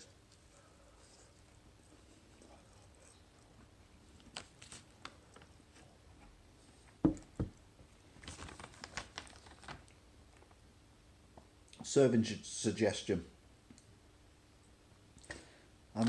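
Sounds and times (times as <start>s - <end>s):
cardboard crinkling and clicking: 8.2s - 9.9s.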